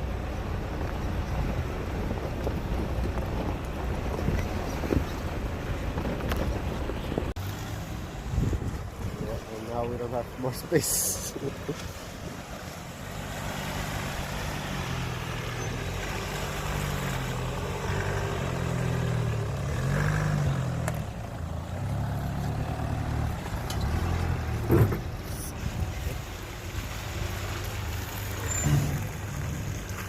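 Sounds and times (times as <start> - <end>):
off-road vehicle engine revving: 7.4 - 26.0.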